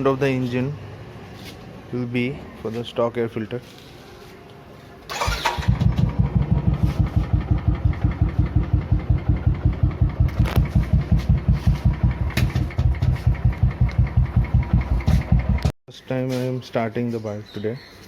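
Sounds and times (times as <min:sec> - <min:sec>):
motorcycle engine idling: 0:05.1 - 0:15.7.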